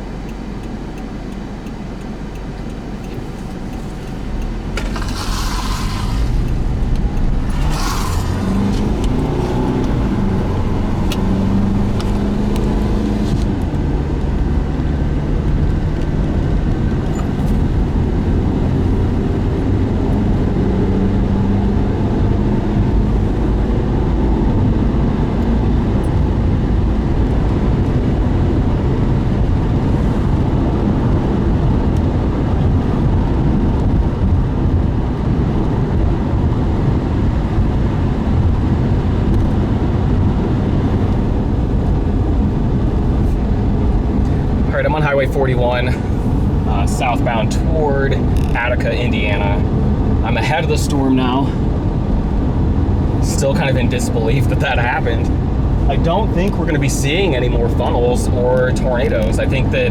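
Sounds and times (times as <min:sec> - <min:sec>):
car engine drone: 0:00.0 - 0:59.9
short rushing noises: 0:03.8 - 0:13.6.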